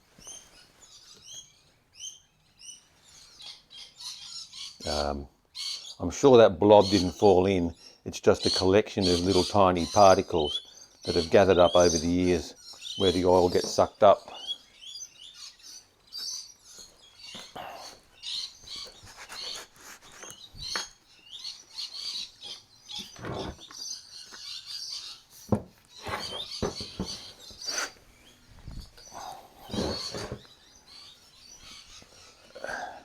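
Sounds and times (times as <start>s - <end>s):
small birds chirping: 0.0s - 33.0s
knocks and clatters: 25.5s - 27.2s.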